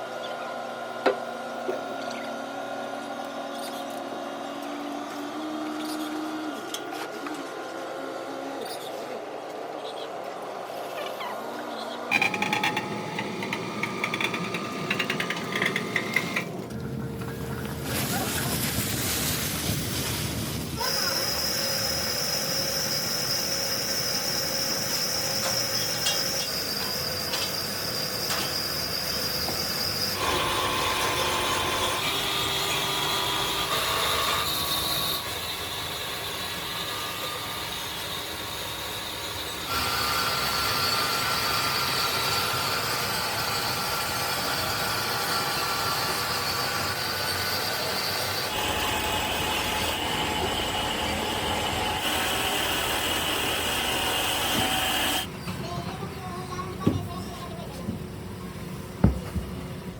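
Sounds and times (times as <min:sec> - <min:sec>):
high mechanical whine: 0:05.7 - 0:18.3, 0:20.8 - 0:55.5
factory machinery running: 0:12.1 - 0:59.9.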